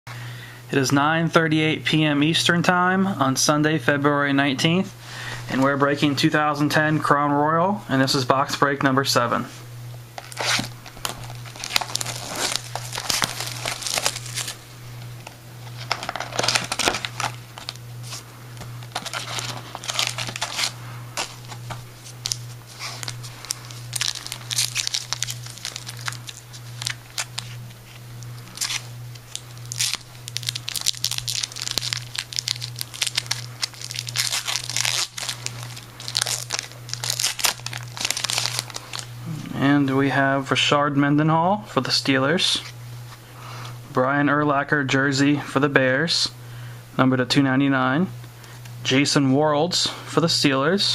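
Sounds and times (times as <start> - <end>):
card pack wrappers tearing: 10.2 - 39.1
wrappers crinkling: 10.2 - 39.2.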